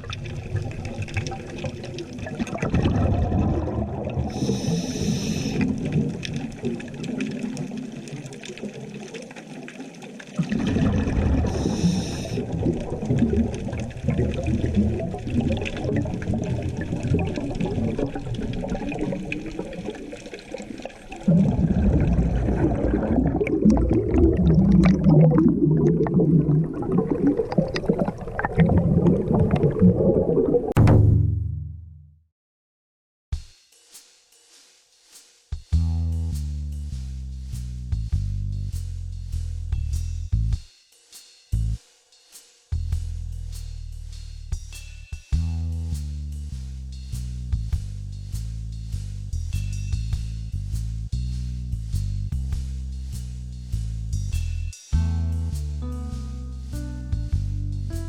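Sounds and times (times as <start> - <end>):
bubbling hiss: 0.0 - 30.7
underwater rumble and sloshing: 0.0 - 31.1.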